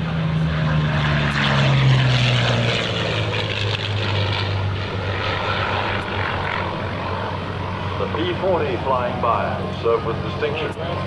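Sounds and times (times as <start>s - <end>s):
propeller plane flying past: 0.0s - 11.0s.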